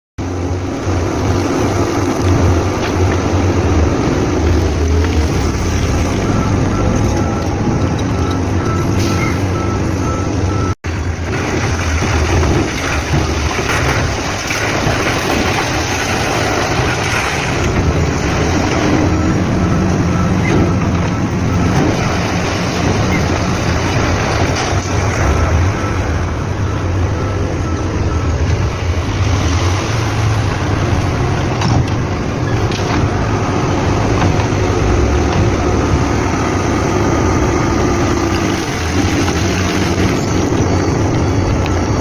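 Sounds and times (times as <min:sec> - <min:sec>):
heavy machinery engines humming: 0:00.2 - 0:42.0
faint high beep: 0:06.0 - 0:10.8, 0:39.7 - 0:42.0.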